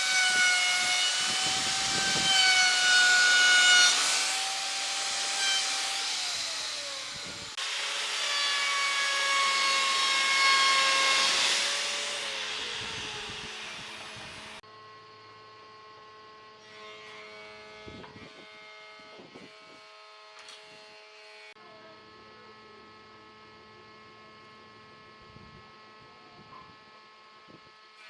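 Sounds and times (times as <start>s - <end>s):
power tool winding down: 0.0s - 14.6s.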